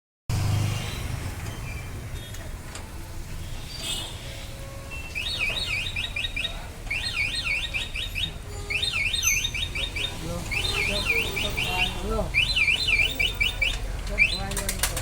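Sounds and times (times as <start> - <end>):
electronic alarm warble and beeps: 5.0 - 14.5.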